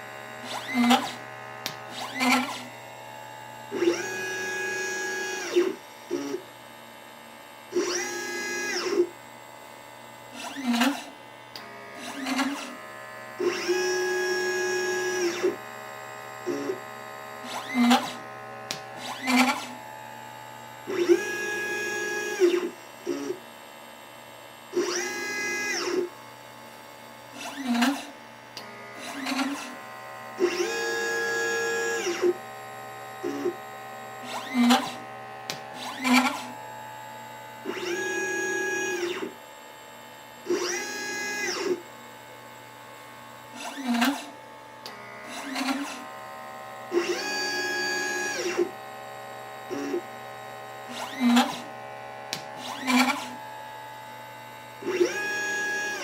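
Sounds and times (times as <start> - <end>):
stepper motors whining: 0.0 - 6.4, 7.8 - 9.1, 10.4 - 23.4, 27.4 - 37.0, 37.6 - 39.4, 40.5 - 41.9, 43.5 - 54.0, 54.8 - 56.0
short motor chirps: 20.9 - 23.4, 34.2 - 35.1.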